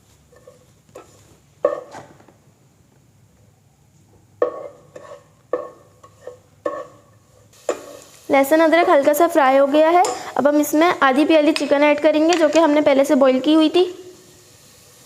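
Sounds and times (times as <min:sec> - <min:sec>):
spoon knocking and scraping pan: 0:00.3 - 0:02.1, 0:04.4 - 0:08.1, 0:09.8 - 0:10.3, 0:11.4 - 0:12.8
food frying in oil: 0:04.5 - 0:15.0.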